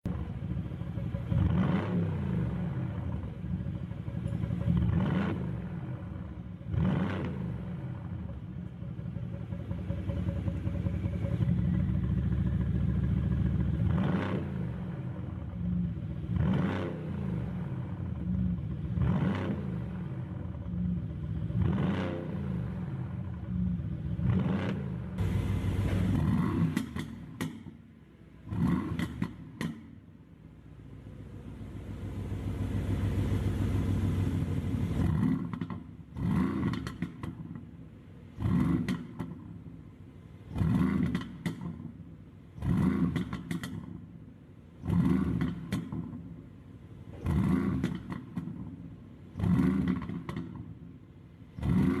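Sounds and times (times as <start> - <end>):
car engine revving: 1.3 - 3.0.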